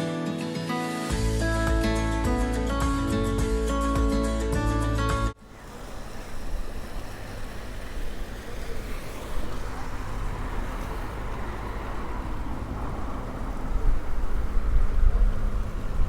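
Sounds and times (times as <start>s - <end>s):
background music: 0.0s - 5.4s
wind rumbling on microphone: 5.4s - 16.0s.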